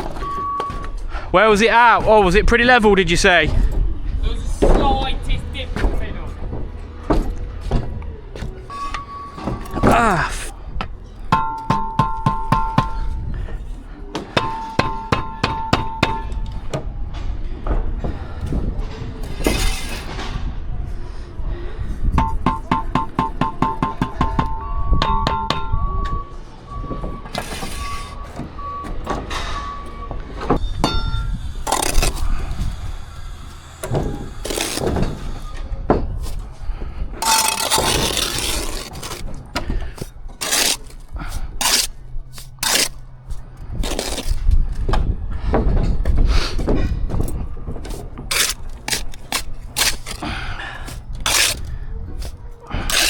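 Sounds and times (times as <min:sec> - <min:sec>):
reversing alarm beeping: 0:00.0 - 0:01.8, 0:08.6 - 0:10.4, 0:14.4 - 0:16.6, 0:22.2 - 0:31.4
short scraping noises: 0:19.2 - 0:20.4, 0:27.3 - 0:28.4, 0:37.2 - 0:39.3, 0:39.9 - 0:44.5, 0:50.8 - 0:53.0.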